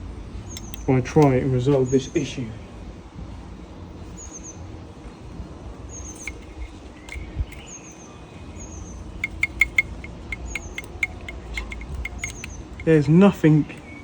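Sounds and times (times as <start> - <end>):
low background hum: 0.0 - 14.0
small bird chirping: 0.4 - 0.9, 5.8 - 14.0
faint clicks: 9.2 - 12.9.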